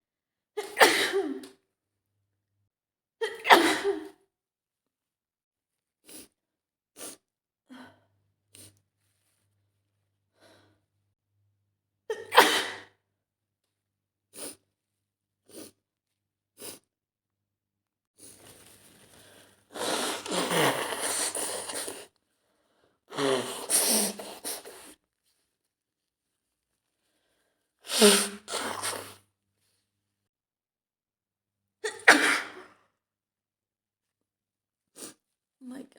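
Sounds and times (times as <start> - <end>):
woman sneezing: 3.2 - 4.1, 12.1 - 12.9, 27.9 - 29.1, 31.8 - 32.7
sniffles: 15.5 - 15.8, 18.2 - 22.1, 23.1 - 25.0, 27.8 - 29.2.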